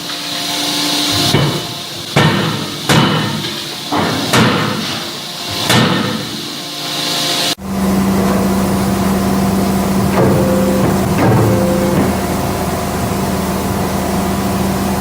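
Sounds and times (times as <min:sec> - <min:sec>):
steady machine hum: 0:06.4 - 0:15.0
forging hammer blows: 0:07.8 - 0:15.0.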